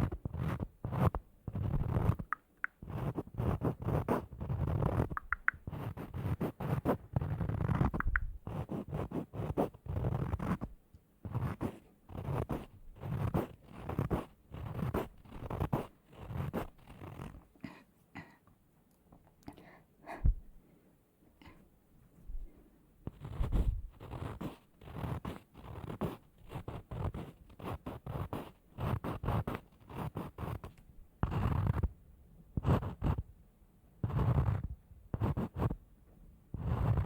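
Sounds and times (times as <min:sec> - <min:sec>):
scratching strokes: 0:00.0 - 0:17.4, 0:23.1 - 0:31.9, 0:32.6 - 0:33.2, 0:34.0 - 0:35.8, 0:36.6 - 0:37.0.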